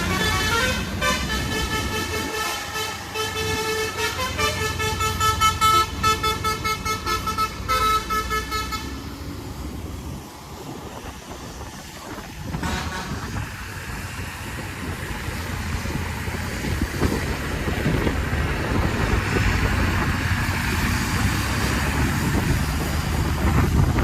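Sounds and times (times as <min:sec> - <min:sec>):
wind noise: 0:00.0 - 0:04.4, 0:09.6 - 0:24.0
bus diesel engine under load: 0:00.0 - 0:24.0.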